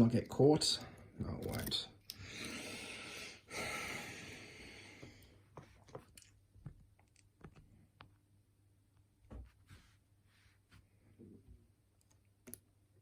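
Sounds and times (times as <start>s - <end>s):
faint rustling scrape: 9.4s - 11.2s.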